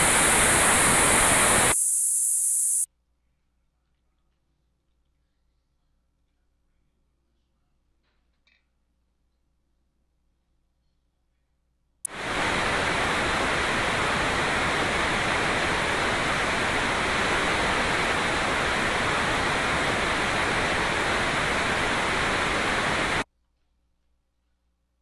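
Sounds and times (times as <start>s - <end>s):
steady pink noise hiss: 0.0s - 2.9s, 12.1s - 23.3s.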